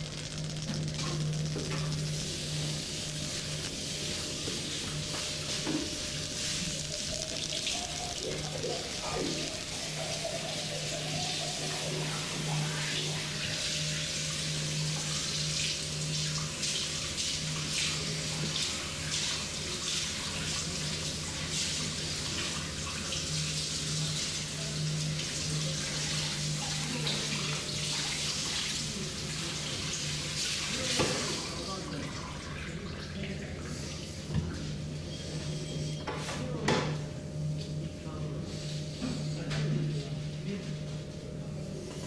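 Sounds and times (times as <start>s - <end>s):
low hum: 0.0s - 13.3s
tap water running into sink: 0.0s - 33.6s.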